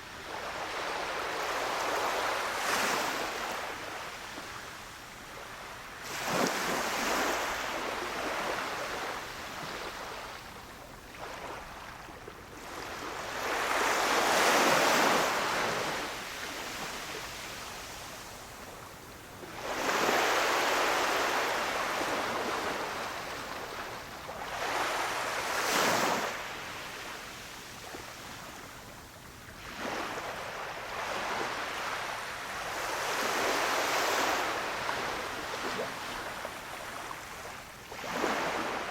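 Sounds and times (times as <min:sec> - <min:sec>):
sea waves breaking on beach: 0:06.0 - 0:10.2, 0:12.6 - 0:18.3, 0:19.5 - 0:26.9, 0:29.6 - 0:38.9.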